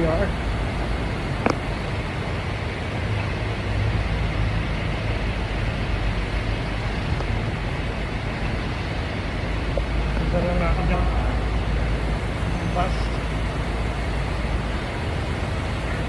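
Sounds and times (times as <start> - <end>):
metro train rumbling: 0.0 - 16.0.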